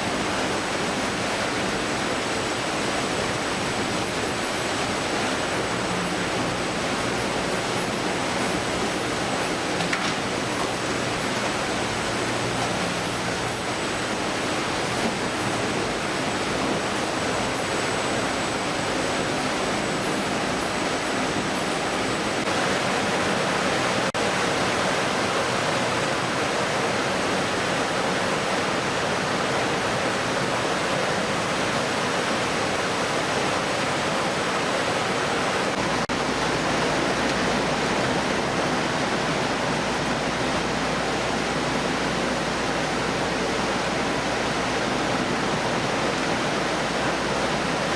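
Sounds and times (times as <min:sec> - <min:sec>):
water rushing: 0:00.0 - 0:47.9.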